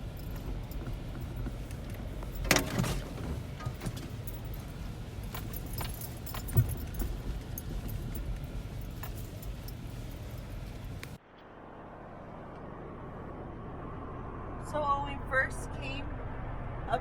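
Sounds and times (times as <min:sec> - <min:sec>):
light clicks and jingling rattles: 0:00.0 - 0:11.2
car driving rumble: 0:00.0 - 0:17.0.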